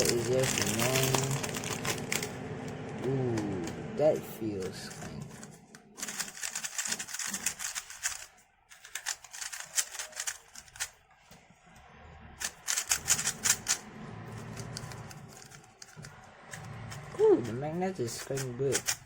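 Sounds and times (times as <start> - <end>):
puzzle cube clicking: 5.3 - 11.0, 12.4 - 13.8, 18.2 - 19.0.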